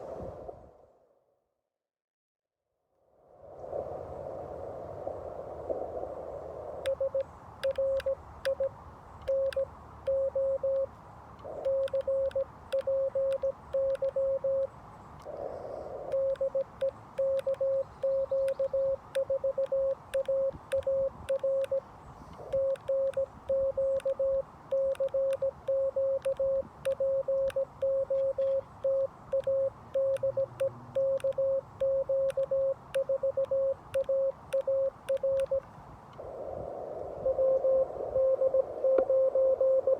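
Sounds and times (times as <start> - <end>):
faint clicks: 6.8 - 15.5, 16.1 - 36.3
morse code tone: 6.9 - 10.9, 11.6 - 14.7, 16.1 - 21.8, 22.4 - 35.6, 37.3 - 39.9.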